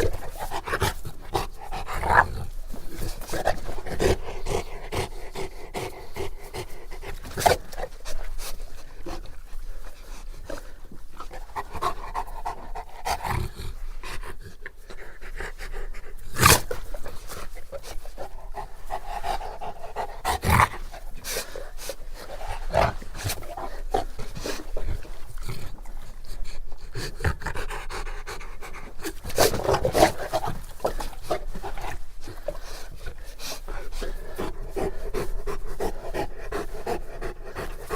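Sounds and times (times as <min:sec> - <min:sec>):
dog panting deeply: 0:00.0 - 0:37.9.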